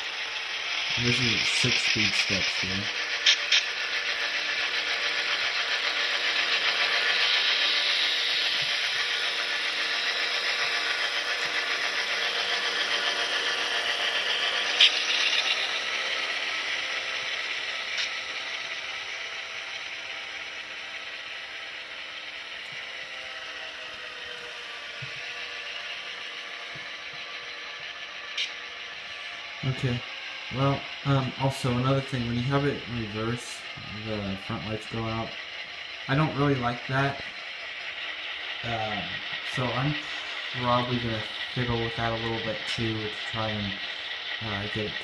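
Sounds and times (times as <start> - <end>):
diesel engine sound drone: 0.0 - 45.0
model train whirring rattle: 0.0 - 45.0
sharp click: 3.2 - 3.7.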